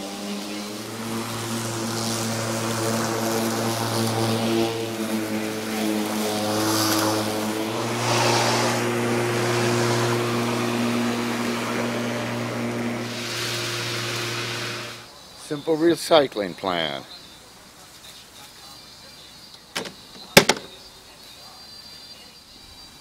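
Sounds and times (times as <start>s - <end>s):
electric lawn mower whirring: 0.0s - 15.1s
mower cutting hiss: 0.0s - 15.2s.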